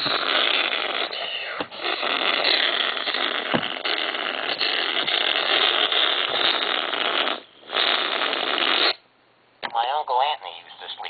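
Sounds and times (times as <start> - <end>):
radio static hiss: 0.0 - 9.0, 9.6 - 11.0.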